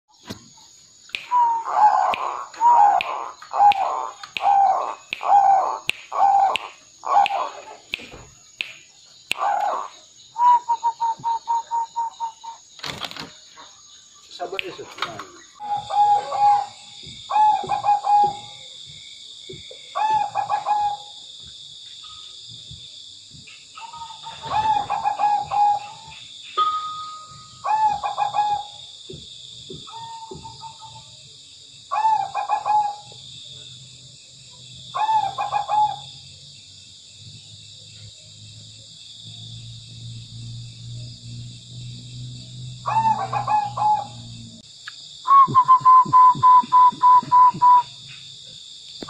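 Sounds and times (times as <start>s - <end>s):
dove cooing: 1.3s - 7.8s, 15.6s - 18.7s, 19.5s - 21.2s, 23.8s - 26.2s, 27.6s - 28.8s, 31.9s - 33.0s, 35.0s - 36.1s, 42.9s - 44.2s, 45.3s - 47.8s.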